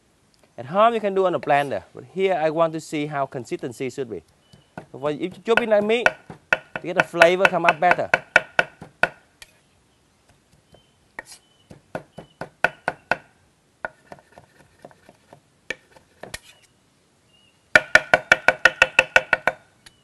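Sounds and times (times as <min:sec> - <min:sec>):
knife chopping on cutting board: 0:04.8 - 0:09.2, 0:13.9 - 0:16.4.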